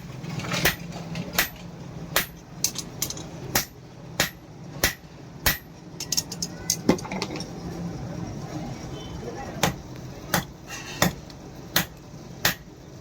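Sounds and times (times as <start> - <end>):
hammer striking steel: 0.6 - 6.3, 9.6 - 12.7.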